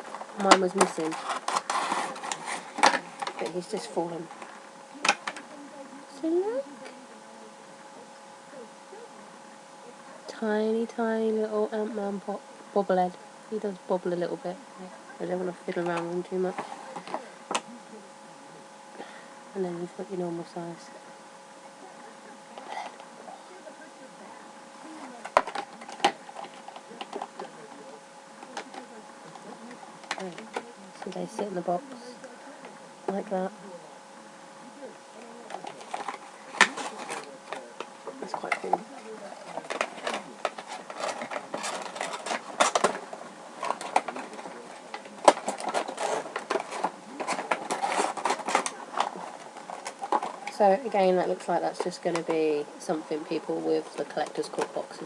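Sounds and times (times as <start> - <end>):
toy packaging clicks and rustles: 0.0 - 5.5, 15.7 - 17.7, 24.9 - 27.8, 28.4 - 31.6, 35.5 - 52.5, 53.2 - 55.0
faint steady hum: 0.0 - 55.0.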